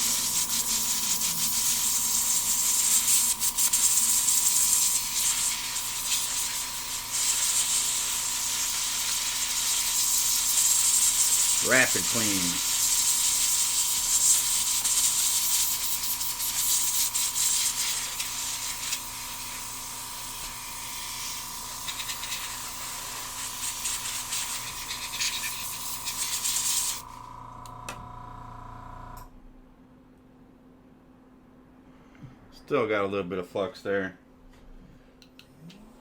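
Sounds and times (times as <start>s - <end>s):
spray can hissing: 0.0s - 27.1s.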